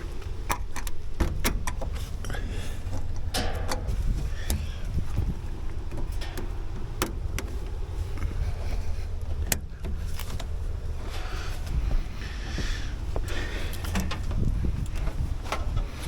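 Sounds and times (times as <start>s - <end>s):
low steady rumble: 0.0s - 16.0s
hand tool clicks and knocks: 2.9s - 4.6s.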